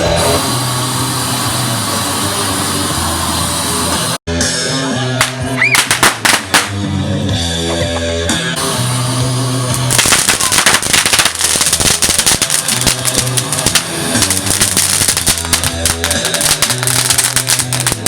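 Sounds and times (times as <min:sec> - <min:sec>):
loud rock music: 0:00.0 - 0:18.0
firecrackers popping: 0:05.2 - 0:06.9, 0:09.6 - 0:18.0.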